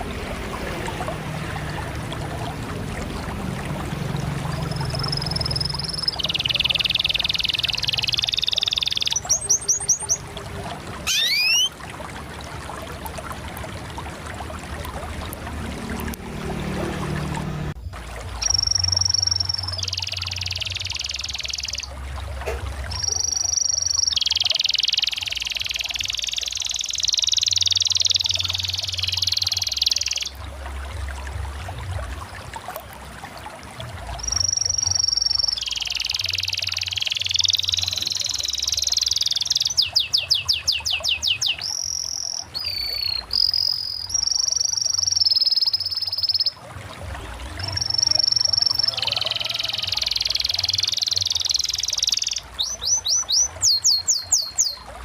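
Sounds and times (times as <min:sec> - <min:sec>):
canary singing: 0:04.6 - 0:10.3, 0:11.0 - 0:11.7, 0:18.4 - 0:21.9, 0:23.0 - 0:30.3, 0:34.2 - 0:46.5, 0:47.6 - 0:54.8.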